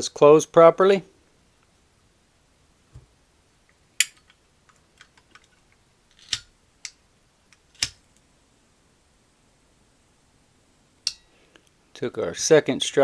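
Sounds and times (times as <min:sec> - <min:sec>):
flint wheel striking: 0:11.1 - 0:11.3.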